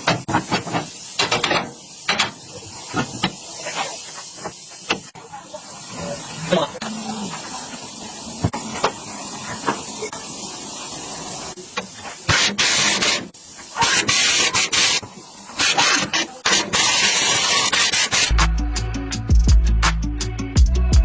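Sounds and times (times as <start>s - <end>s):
faint steady hiss: 0.0s - 18.2s
loud spraying hiss: 0.0s - 20.6s
music with a beat: 18.3s - 21.0s.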